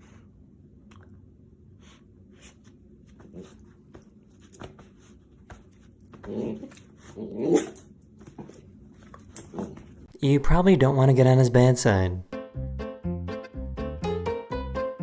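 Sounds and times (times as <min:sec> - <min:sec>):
quiet clicks and scuffs: 0:01.8 - 0:07.2
dog growling: 0:06.2 - 0:07.8.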